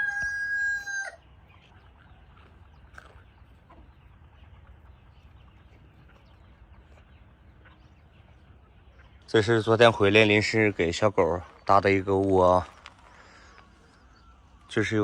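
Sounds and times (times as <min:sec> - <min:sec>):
rooster crowing: 0:00.0 - 0:01.2
faint chicken clucking: 0:00.0 - 0:15.0.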